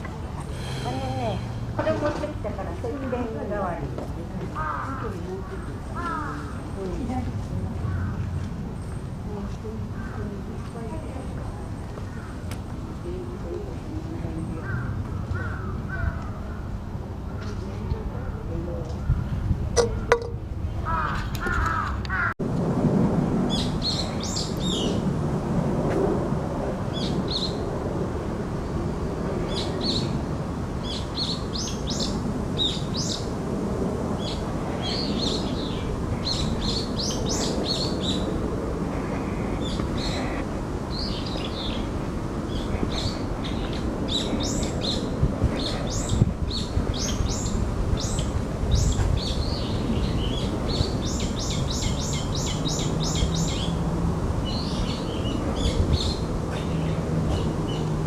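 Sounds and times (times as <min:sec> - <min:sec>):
birds chirping: 0:04.4 - 0:22.3, 0:34.2 - 0:58.0.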